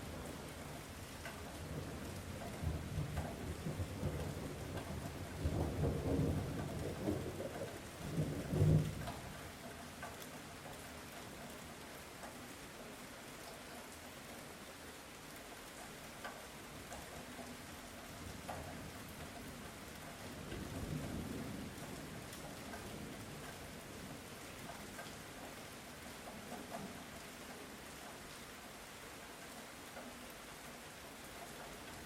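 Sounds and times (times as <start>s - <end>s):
light rain falling: 0.0s - 32.0s
raindrops ticking: 0.1s - 28.4s
distant thunder rumble: 2.7s - 9.2s.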